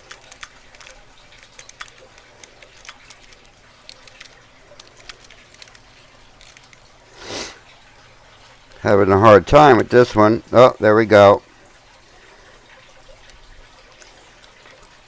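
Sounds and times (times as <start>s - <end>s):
lock pick clicking in lock: 0.0s - 6.8s.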